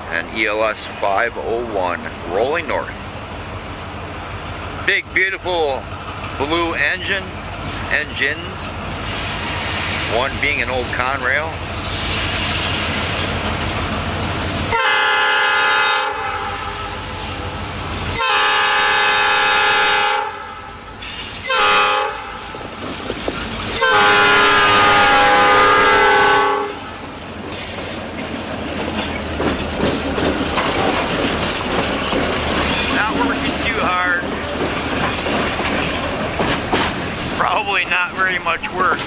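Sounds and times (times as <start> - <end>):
wheels clattering over rail joints: 0.0 - 14.8, 22.5 - 24.0, 26.8 - 39.0
train rumbling past: 0.0 - 39.0
locomotive air horn blasts: 14.7 - 20.8, 21.4 - 22.6, 23.7 - 27.0.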